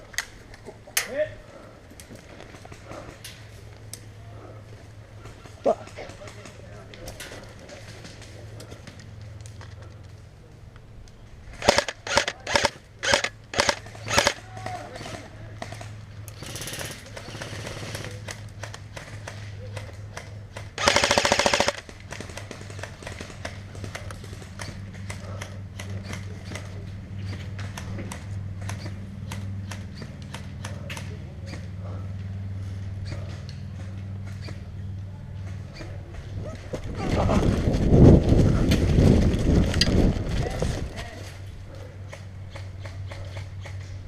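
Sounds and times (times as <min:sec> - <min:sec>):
airsoft guns firing: 0:11.5 - 0:26.7.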